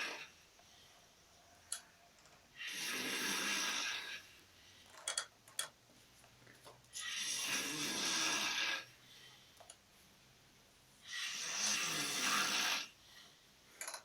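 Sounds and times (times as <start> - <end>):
quiet breathing: 0.0 - 14.0
man snoring: 2.6 - 4.3, 7.0 - 8.9, 11.1 - 13.0.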